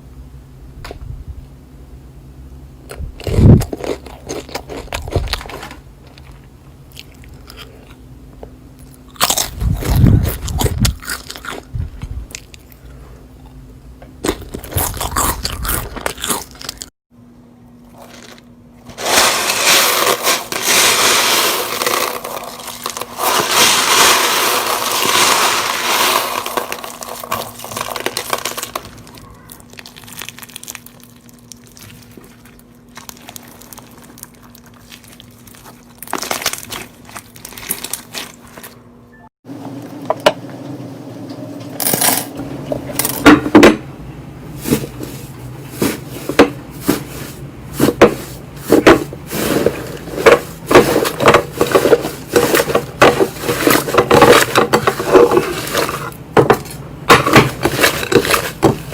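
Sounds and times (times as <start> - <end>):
slime crunchy crackling: 14.2 - 16.9, 19.0 - 38.8.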